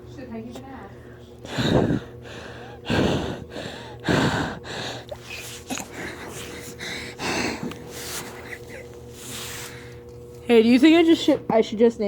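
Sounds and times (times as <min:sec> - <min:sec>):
person breathing heavily: 0:01.1 - 0:10.0.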